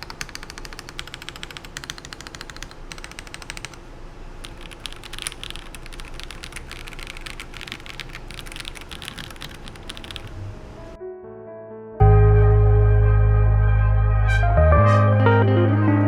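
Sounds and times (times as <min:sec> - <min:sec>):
mechanical keyboard key clacks: 0:00.0 - 0:03.8, 0:04.4 - 0:10.3.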